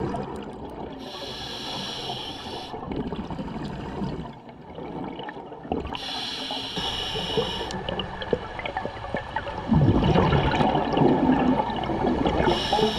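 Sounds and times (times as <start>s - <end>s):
underwater bubbling and gurgling: 0.0s - 12.9s
regulator breath hiss: 1.0s - 2.8s, 6.0s - 7.8s, 12.4s - 12.9s.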